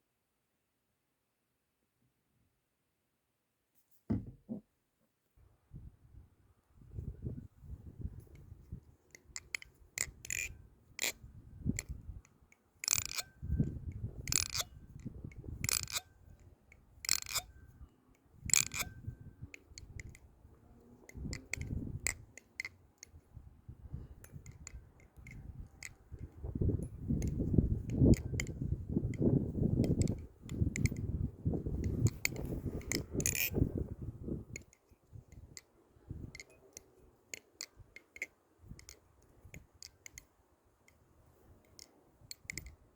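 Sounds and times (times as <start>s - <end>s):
butterfly knife metallic clicks: 9.1s - 17.8s, 18.5s - 20.3s, 21.1s - 23.2s, 24.2s - 31.1s, 31.8s - 33.7s, 36.3s - 40.3s, 41.6s - 42.8s.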